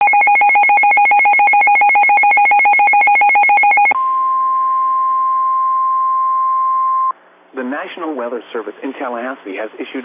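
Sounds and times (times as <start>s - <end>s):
steady alarm tone: 0.0s - 6.0s
two-pitch electronic beeping: 0.0s - 7.1s.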